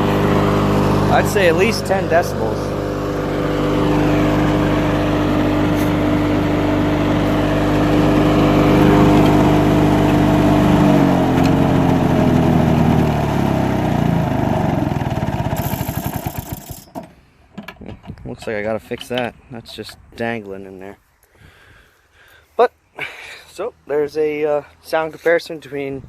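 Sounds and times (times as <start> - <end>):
mower engine running and coasting down: 0.0 - 17.8.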